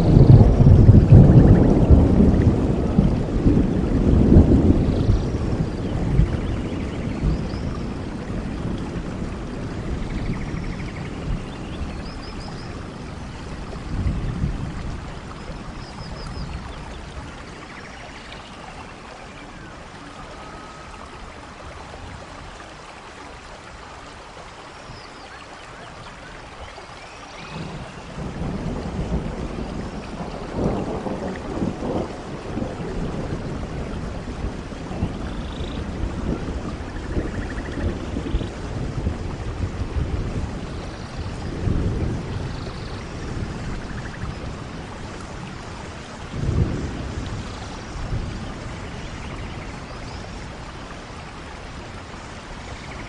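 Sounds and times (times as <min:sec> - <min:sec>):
thunder rumbling: 0:00.0 - 0:17.8, 0:27.5 - 0:53.0
steady rain: 0:00.0 - 0:53.0.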